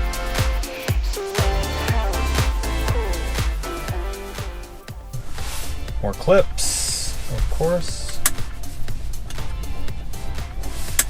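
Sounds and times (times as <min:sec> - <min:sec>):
kick drum: 0:00.0 - 0:06.2
bass line: 0:00.0 - 0:06.4
upbeat funky music: 0:00.0 - 0:11.0.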